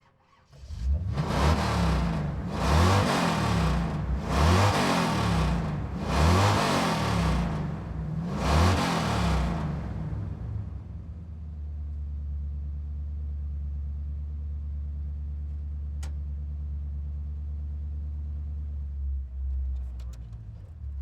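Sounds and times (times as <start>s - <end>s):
car engine revving and idling: 0.6s - 11.7s.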